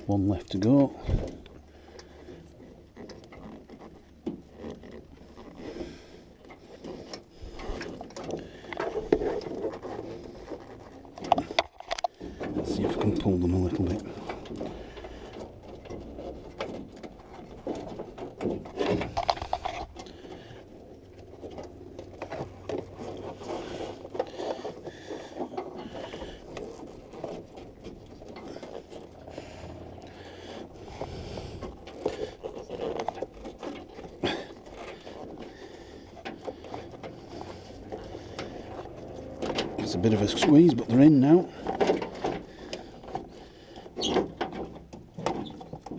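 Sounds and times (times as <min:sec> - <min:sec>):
wires scraping and rustling: 0:00.0 - 0:45.9.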